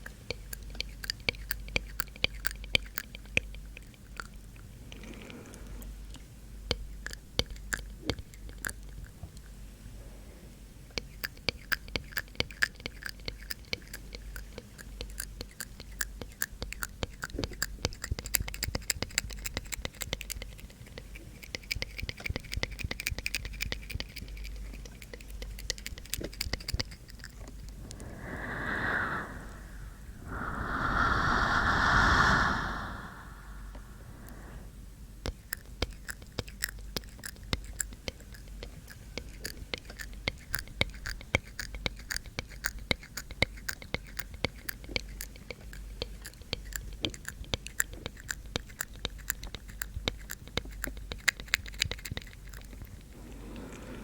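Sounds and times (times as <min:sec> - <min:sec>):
wet mouth clicks and tongue taps: 0:00.0 - 0:05.3, 0:06.1 - 0:09.2, 0:10.9 - 0:28.2, 0:35.2 - 0:53.1
breathy exhalations: 0:27.6 - 0:34.8.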